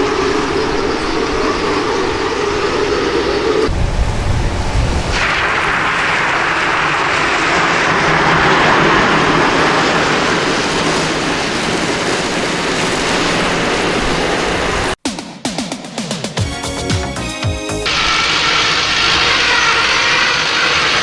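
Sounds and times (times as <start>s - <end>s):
drag racing engine noise: 0.0s - 15.0s, 17.9s - 21.0s
music: 15.0s - 17.9s.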